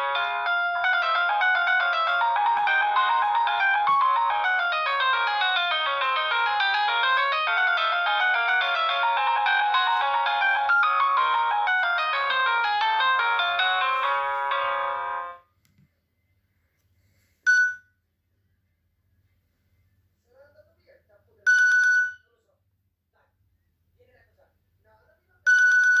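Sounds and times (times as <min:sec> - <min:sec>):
polyphonic phone ringtone: 0:00.0 - 0:15.4, 0:17.5 - 0:17.8, 0:21.5 - 0:22.2, 0:25.5 - 0:26.0.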